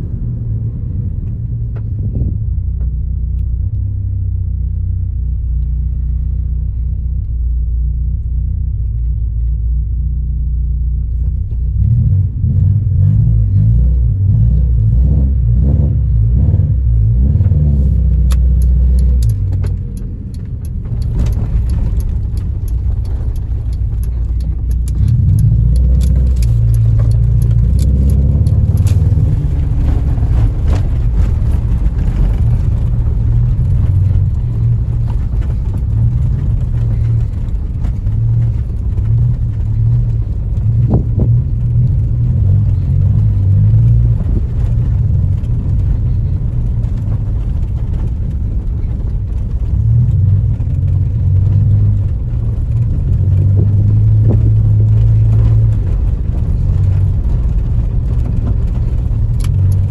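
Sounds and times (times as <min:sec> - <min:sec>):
car engine rumbling unevenly: 0:00.0 - 0:59.9
light clicks and rattles: 0:17.8 - 0:59.9.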